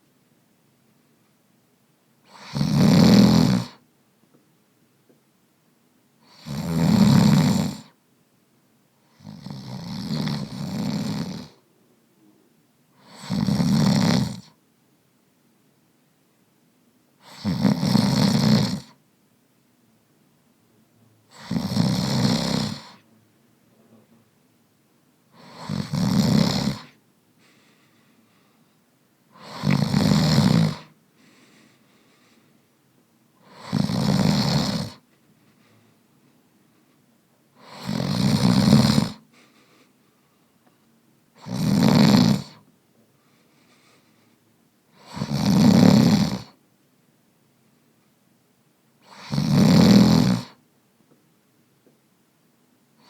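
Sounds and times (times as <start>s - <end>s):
man snoring: 2.3s - 3.8s, 6.2s - 7.9s, 9.1s - 11.6s, 13.0s - 14.5s, 17.2s - 18.9s, 21.3s - 23.0s, 25.3s - 27.0s, 29.3s - 31.0s, 33.4s - 35.0s, 37.6s - 39.2s, 41.4s - 42.6s, 44.9s - 46.6s, 49.0s - 50.6s.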